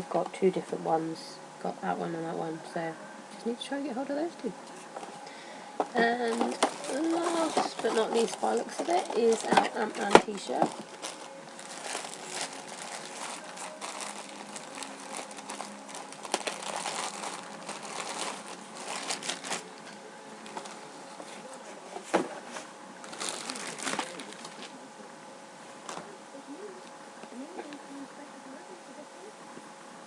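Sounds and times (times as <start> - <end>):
packaging crinkling and rustling: 5.0 - 24.8.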